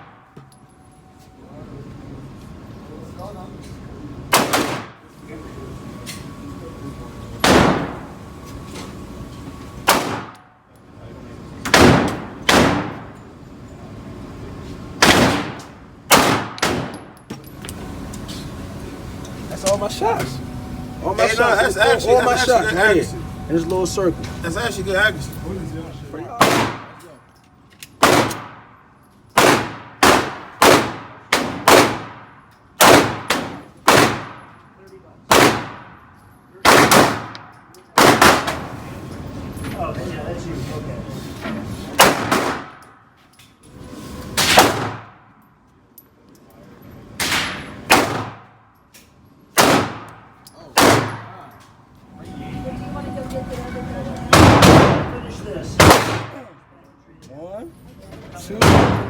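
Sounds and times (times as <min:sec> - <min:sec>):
pistol shots with echo: 0:04.3 - 0:05.0, 0:07.4 - 0:08.0, 0:09.9 - 0:10.4, 0:11.7 - 0:13.1, 0:15.0 - 0:17.1, 0:26.4 - 0:27.0, 0:28.0 - 0:28.7, 0:29.4 - 0:34.5, 0:35.3 - 0:36.0, 0:36.6 - 0:38.6, 0:49.6 - 0:51.4, 0:55.8 - 0:56.4, 0:58.6 - 0:59.0.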